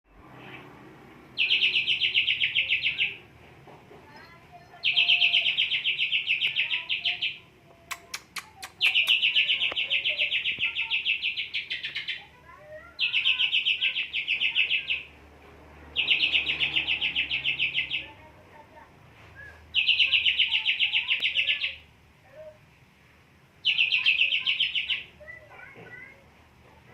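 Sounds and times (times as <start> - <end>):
sharp clicks: 7.8 - 9.9
bird singing rapid high notes: 8.0 - 12.3.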